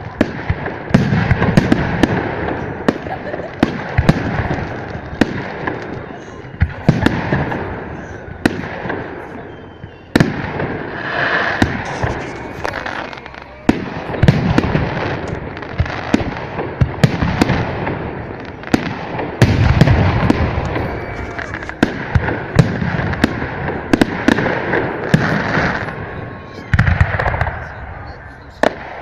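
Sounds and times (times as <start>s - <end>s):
fireworks crackling: 0.0s - 29.0s
fireworks shells bursting: 0.9s - 17.6s.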